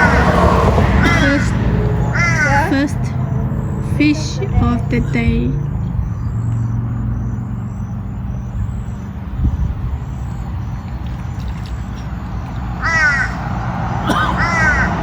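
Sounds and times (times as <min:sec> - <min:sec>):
harsh animal calls: 0:00.0 - 0:09.3, 0:12.6 - 0:15.0
low rumble: 0:00.0 - 0:10.8.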